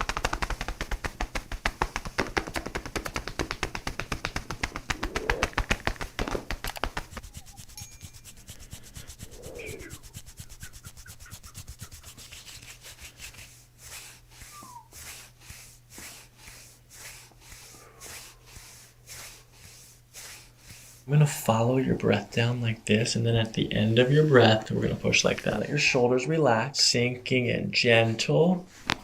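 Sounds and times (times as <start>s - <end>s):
hands rubbing skin: 0.0s - 22.4s.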